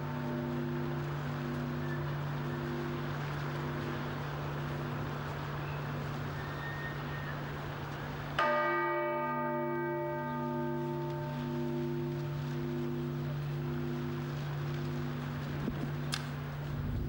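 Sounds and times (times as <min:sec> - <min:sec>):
low church bells humming: 0:00.0 - 0:17.0
higher bell struck: 0:08.4 - 0:15.3.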